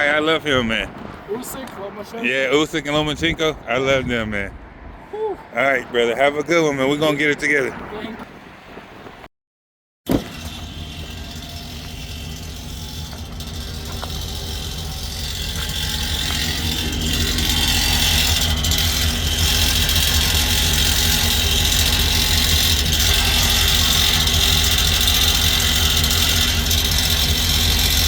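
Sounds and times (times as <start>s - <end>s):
vehicle engine running: 10.2s - 28.0s.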